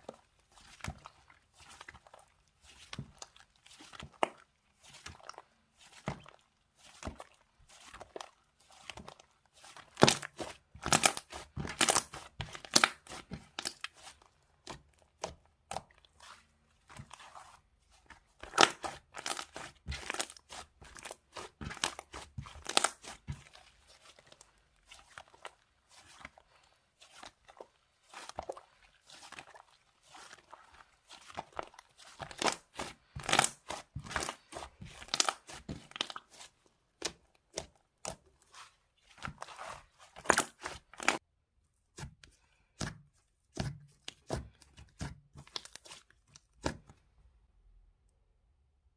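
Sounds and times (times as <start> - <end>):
crinkling and tearing: 8.8 - 14.8, 17.0 - 41.2.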